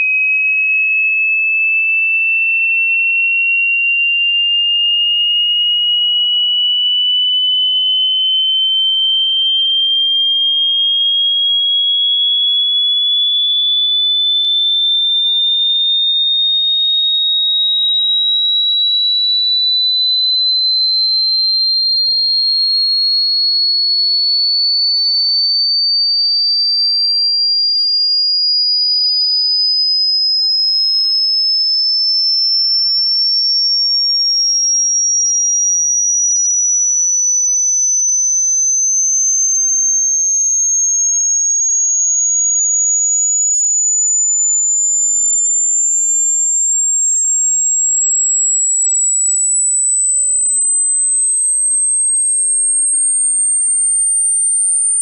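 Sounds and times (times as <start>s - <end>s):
rising sine tone sweep: 6.4s - 10.4s, 33.8s - 55.0s.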